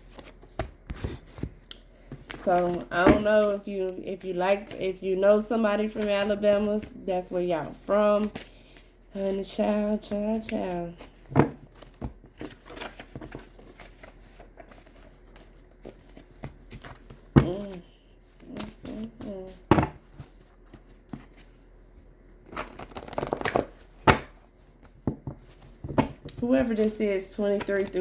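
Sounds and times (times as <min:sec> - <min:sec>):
cards shuffling and riffling: 0:22.5 - 0:26.9.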